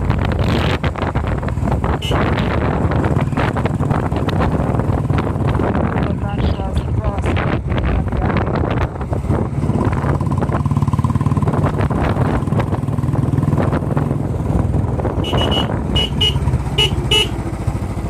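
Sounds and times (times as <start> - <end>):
vehicle engine running: 0.0 - 18.0
short horn beeps: 15.2 - 17.4.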